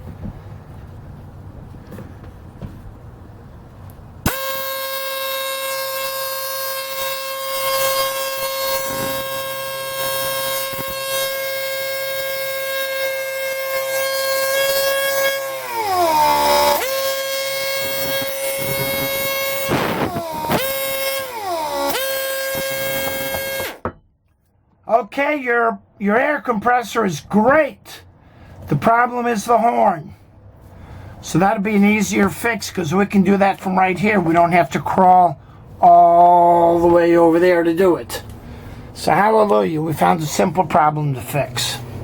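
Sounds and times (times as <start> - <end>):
air horn blast: 4.2 - 23.8.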